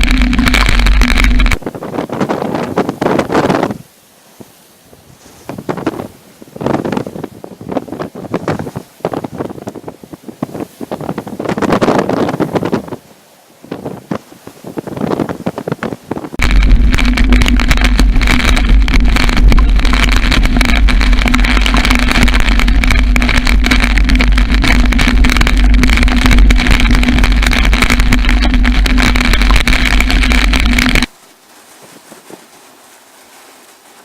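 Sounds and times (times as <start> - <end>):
steady hum: 0.0 - 2.2, 16.4 - 31.2
storm winds roaring on microphone: 0.0 - 31.2.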